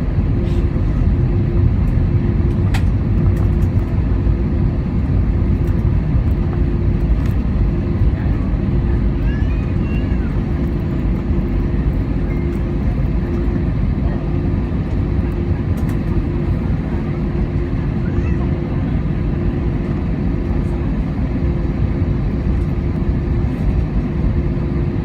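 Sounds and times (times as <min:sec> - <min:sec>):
aircraft cabin rumble and hum: 0:00.0 - 0:25.0.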